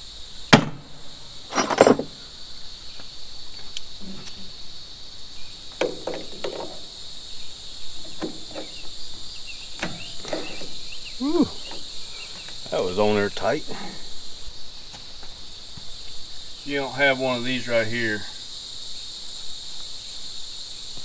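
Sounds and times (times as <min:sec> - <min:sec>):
high insect drone: 0:00.0 - 0:21.0
sharp metal clank: 0:01.5 - 0:02.2.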